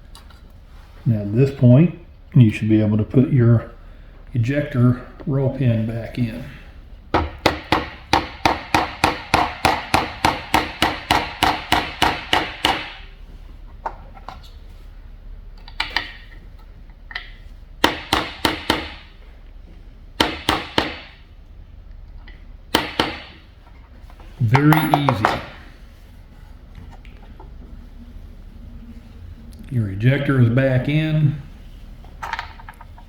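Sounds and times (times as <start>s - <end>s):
small hammer tapping metal pin: 24.5s - 25.5s.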